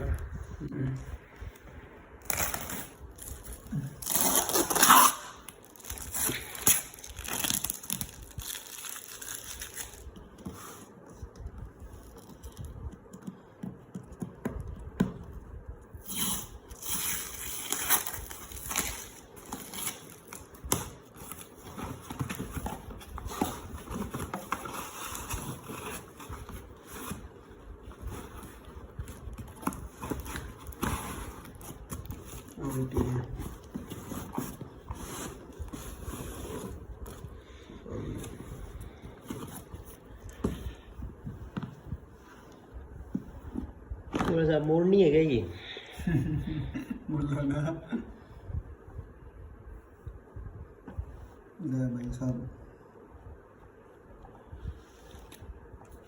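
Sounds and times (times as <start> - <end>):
packaging tearing and crinkling: 2.2 - 10.2, 16.0 - 22.9.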